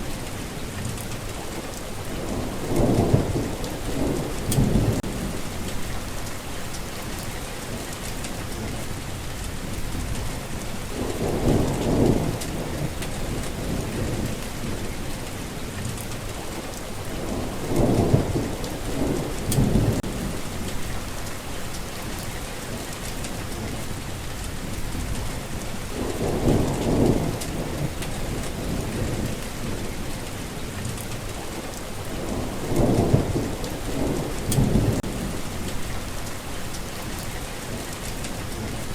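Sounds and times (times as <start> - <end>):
steady rain hissing: 0.0 - 38.9
thunder rolling: 2.1 - 8.0, 9.6 - 15.1, 17.2 - 21.5, 24.6 - 30.1, 32.0 - 38.8.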